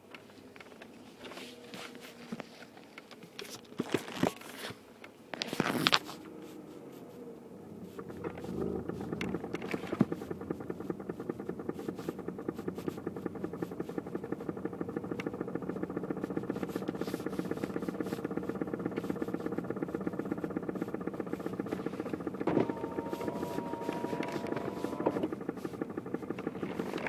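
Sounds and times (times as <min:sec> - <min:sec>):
car engine running: 0:05.4 - 0:27.0
rapid regular clicking: 0:07.8 - 0:27.0.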